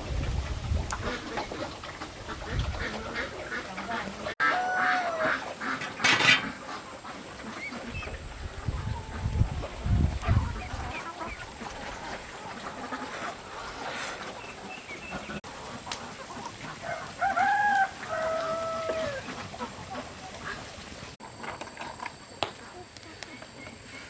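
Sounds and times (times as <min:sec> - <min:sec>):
rooster crowing: 0:04.4 - 0:05.5, 0:16.8 - 0:19.3.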